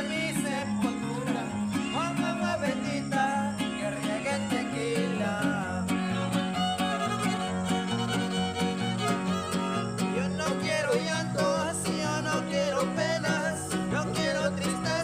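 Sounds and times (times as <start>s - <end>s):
alternating bass guitar notes: 0.0s - 15.0s
rhythmic guitar strumming: 0.0s - 15.0s
violin melody with slides: 5.9s - 10.2s.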